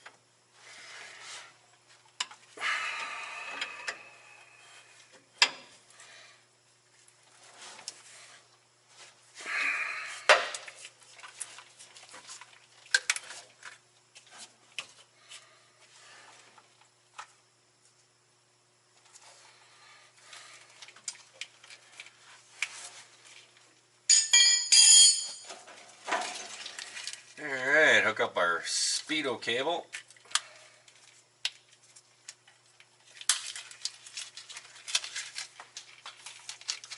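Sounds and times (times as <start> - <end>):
loud ringing metal clatter: 24.1 - 25.5
hand tools and metal fittings clinking: 24.1 - 27.2.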